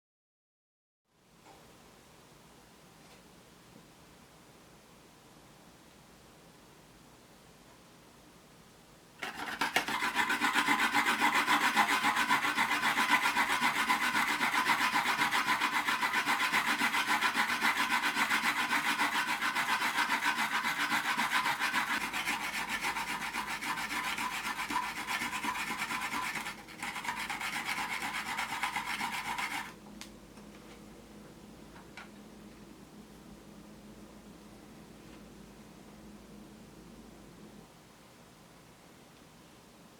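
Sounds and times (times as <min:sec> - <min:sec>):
onion rasping on a grater: 0:09.2 - 0:29.8.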